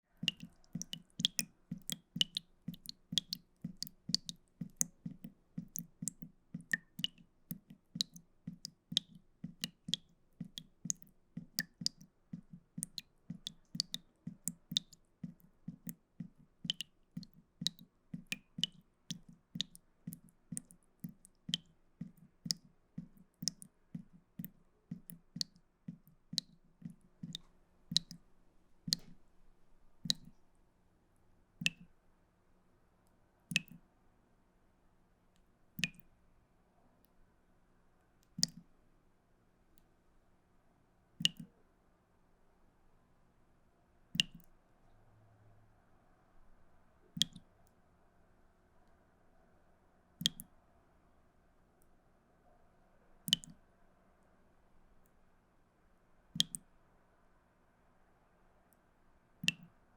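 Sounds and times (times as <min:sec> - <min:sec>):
water drops plinking into pool: 0:00.1 - 0:28.2, 0:28.9 - 0:29.2, 0:30.1 - 0:30.3, 0:31.6 - 0:31.9, 0:33.5 - 0:33.8, 0:35.8 - 0:36.1, 0:38.2 - 0:38.6, 0:41.2 - 0:41.6, 0:44.2 - 0:44.5, 0:47.2 - 0:47.5, 0:50.2 - 0:50.5, 0:53.3 - 0:53.6, 0:56.4 - 0:56.7, 0:59.4 - 0:59.8.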